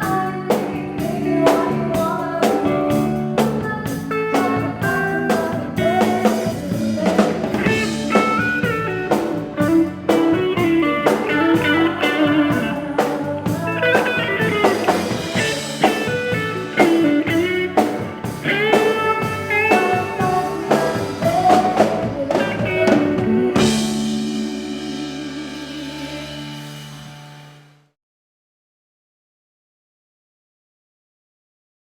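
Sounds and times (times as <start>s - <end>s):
lead guitar line: 0.0s - 27.8s
live band playing: 0.0s - 27.8s
loud drum hit: 22.1s - 27.8s.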